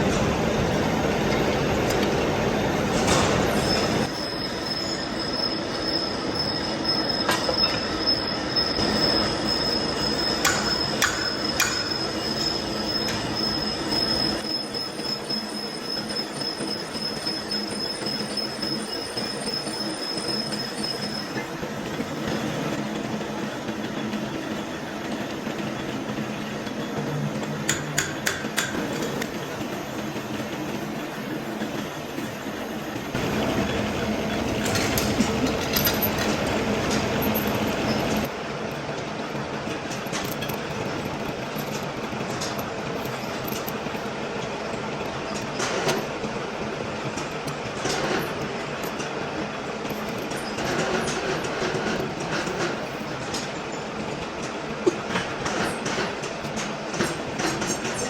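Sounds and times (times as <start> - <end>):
lathe machine noise: 0.0 - 58.0
high-pitched cutting squeal: 3.5 - 21.5.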